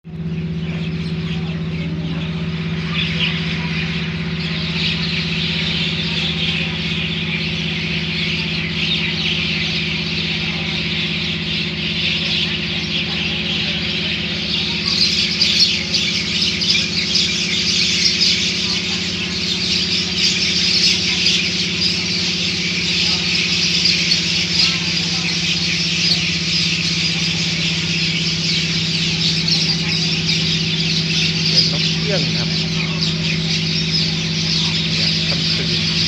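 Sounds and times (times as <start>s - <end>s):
flock of birds chattering: 0.0s - 36.0s
low hum: 0.0s - 36.0s.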